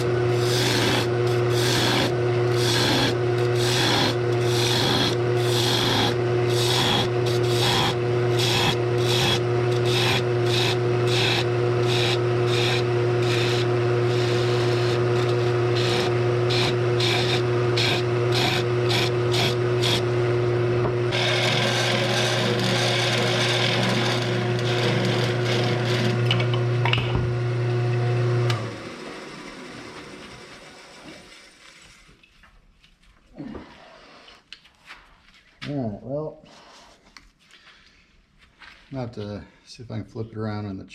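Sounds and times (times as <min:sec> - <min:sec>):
tool rasping against spinning wood: 0:00.0 - 0:26.6
wood lathe motor hum: 0:00.0 - 0:31.6.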